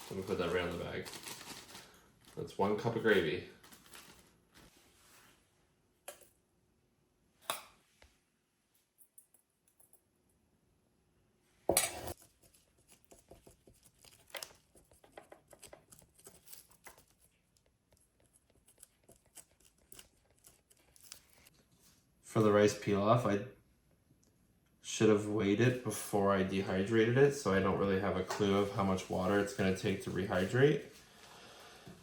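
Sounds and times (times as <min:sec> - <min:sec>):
plastic bag crinkling: 0:00.0 - 0:04.7
plastic bag rustling: 0:00.0 - 0:05.4.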